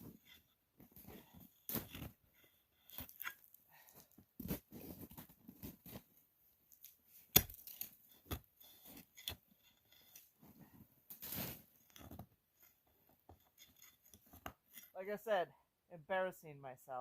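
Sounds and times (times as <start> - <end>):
axe striking ice: 7.3 - 7.9.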